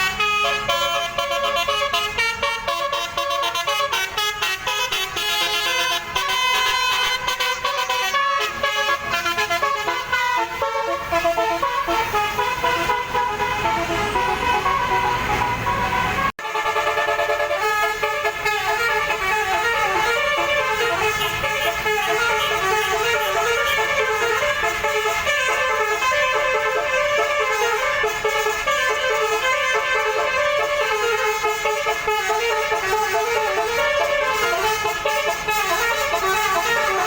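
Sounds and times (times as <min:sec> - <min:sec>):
multi-trumpet bus horn melody: 0:00.0 - 0:37.0.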